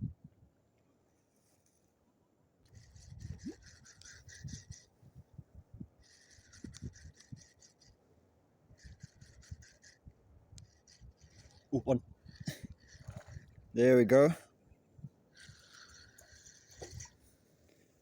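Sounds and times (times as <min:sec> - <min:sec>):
fishing reel whirring: 0:02.6 - 0:05.0, 0:06.0 - 0:08.0, 0:08.7 - 0:13.6, 0:15.3 - 0:17.2.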